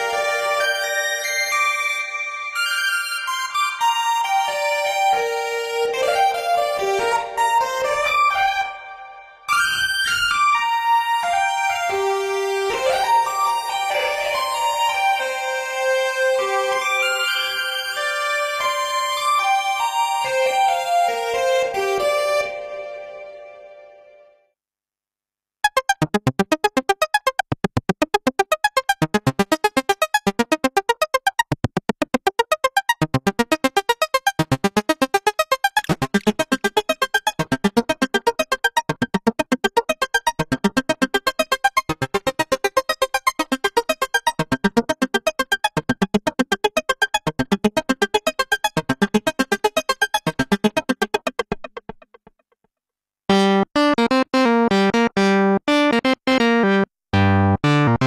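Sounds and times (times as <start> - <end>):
synthesizer repeating short notes: 25.6 - 52.2.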